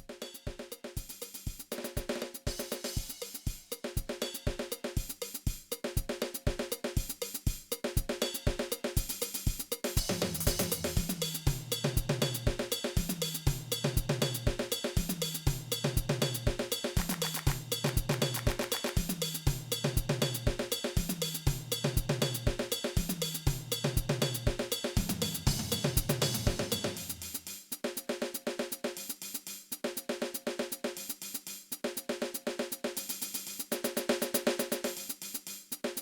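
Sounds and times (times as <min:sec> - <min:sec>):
drum kit playing a groove: 0:00.0 - 0:36.0
backing music: 0:17.0 - 0:19.1, 0:25.0 - 0:27.4
crash cymbals: 0:24.7 - 0:27.8.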